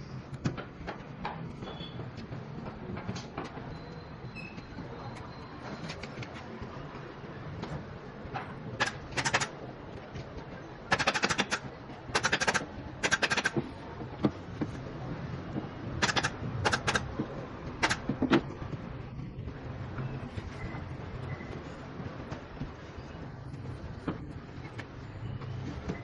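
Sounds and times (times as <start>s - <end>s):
pneumatic staple gun firing: 10.9s - 11.6s, 12.2s - 13.6s, 16.0s - 17.0s.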